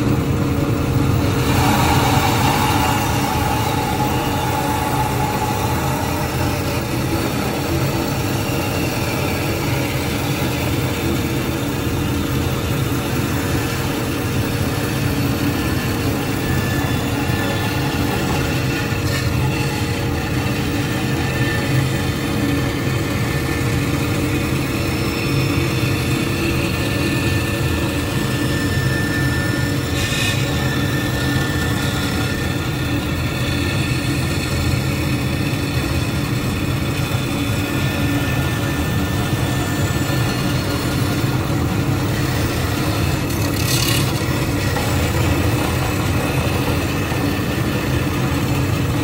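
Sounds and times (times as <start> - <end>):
bandsaw motor hum: 0.0 - 49.0.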